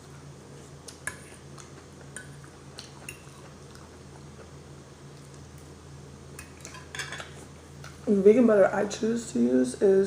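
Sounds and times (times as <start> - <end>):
cutlery clinking on plate: 6.6 - 7.4.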